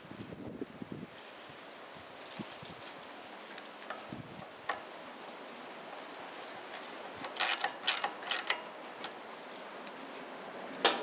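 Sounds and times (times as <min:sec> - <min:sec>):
engine parts clicking and rattling: 0:07.2 - 0:09.2.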